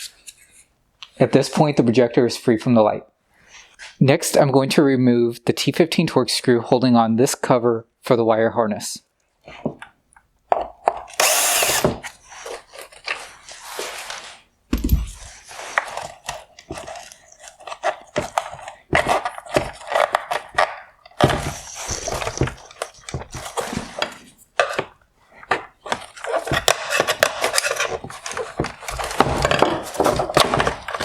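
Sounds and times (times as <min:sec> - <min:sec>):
plastic parts clicking and knocking: 0:15.8 - 0:31.0.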